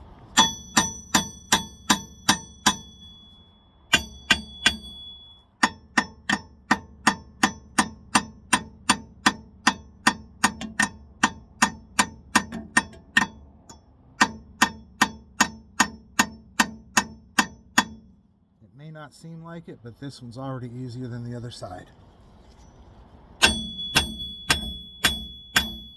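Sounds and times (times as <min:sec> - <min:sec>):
hammer striking steel: 0:00.1 - 0:18.2, 0:23.4 - 0:25.9.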